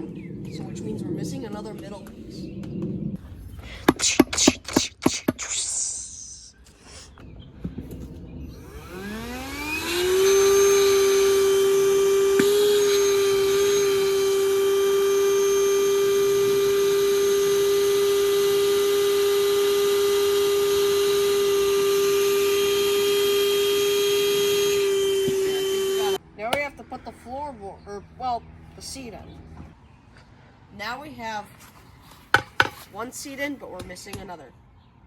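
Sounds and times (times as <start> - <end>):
electric air pump whine: 7.9 - 26.2.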